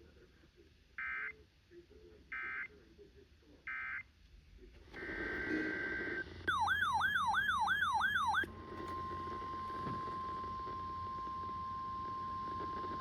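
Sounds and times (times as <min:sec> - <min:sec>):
siren-like warble: 0:06.5 - 0:08.5
steady high alert tone: 0:06.5 - 0:08.5.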